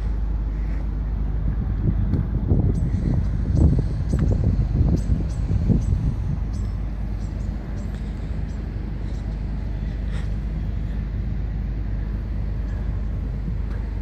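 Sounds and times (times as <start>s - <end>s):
excavator diesel engine droning: 0.0s - 14.0s.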